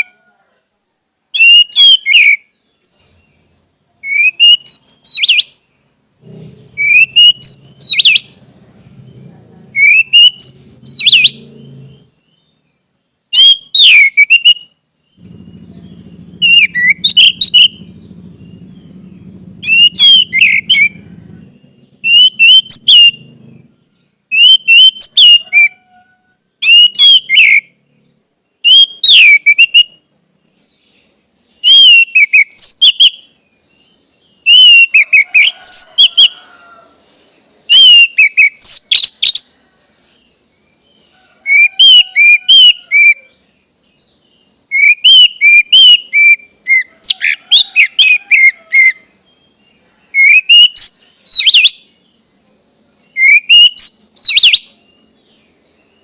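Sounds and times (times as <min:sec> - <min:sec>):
steady high hiss: 0:00.1 - 0:25.1, 0:29.9 - 0:47.8, 0:48.5 - 0:56.0
thrush singing whistled phrases: 0:01.4 - 0:12.2, 0:13.3 - 0:25.8, 0:26.6 - 0:27.8, 0:28.6 - 0:30.0, 0:30.9 - 0:33.4, 0:34.3 - 0:36.5, 0:37.6 - 0:39.5, 0:41.5 - 0:43.3, 0:44.6 - 0:49.5, 0:50.1 - 0:51.8, 0:53.1 - 0:54.7
low hum: 0:15.2 - 0:24.2.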